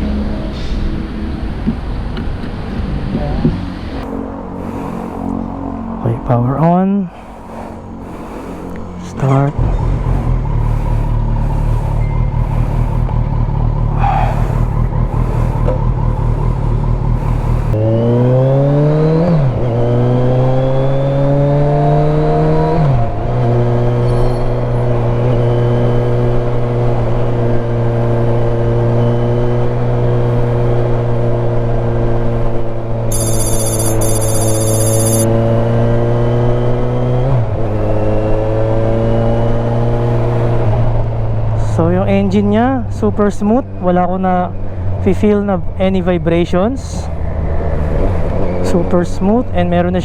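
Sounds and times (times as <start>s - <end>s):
motorcycle engine revving: 7.7s - 41.6s.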